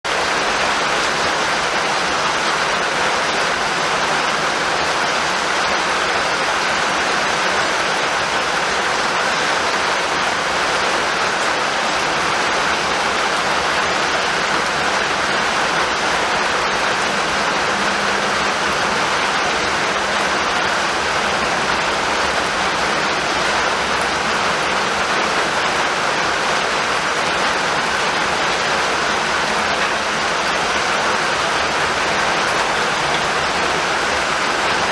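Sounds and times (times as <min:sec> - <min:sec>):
rain hissing steadily: 0:00.1 - 0:34.9.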